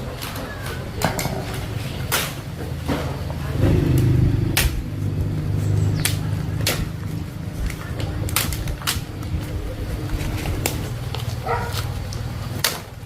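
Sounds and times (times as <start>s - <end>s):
motor droning: 3.6s - 6.6s.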